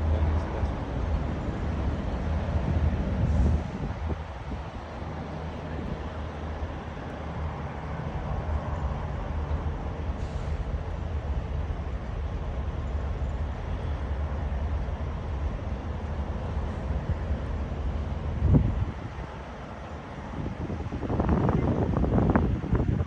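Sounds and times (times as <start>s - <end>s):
truck engine and road rumble: 0.0s - 23.0s
wind hiss: 1.7s - 23.0s
brief sharp hiss: 10.2s - 10.7s.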